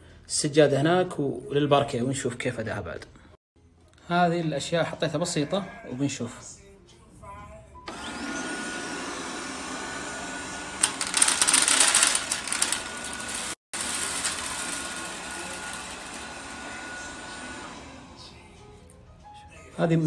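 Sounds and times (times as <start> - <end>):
robot vacuum whining: 7.9 - 18.3.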